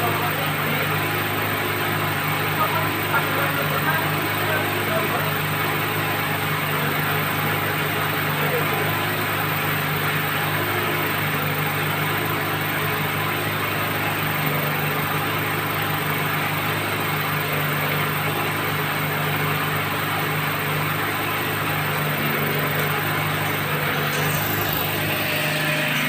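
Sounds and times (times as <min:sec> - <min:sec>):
drilling machine engine hum: 0:00.0 - 0:26.0.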